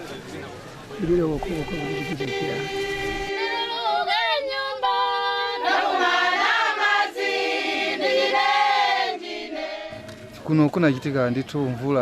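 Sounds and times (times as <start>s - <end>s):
voices singing without instruments: 1.0s - 10.3s.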